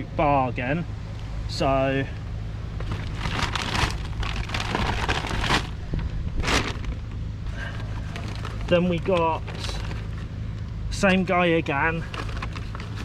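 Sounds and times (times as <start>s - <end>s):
steady low hum: 0.0s - 13.0s
rustling and crackling of items: 2.8s - 10.3s, 11.9s - 13.0s.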